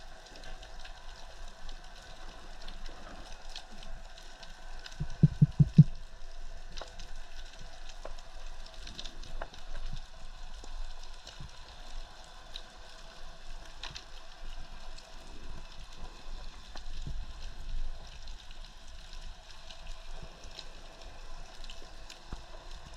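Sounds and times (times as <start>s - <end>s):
faint crackling clicks: 0.0s - 22.9s
quick low thumps: 5.0s - 5.9s.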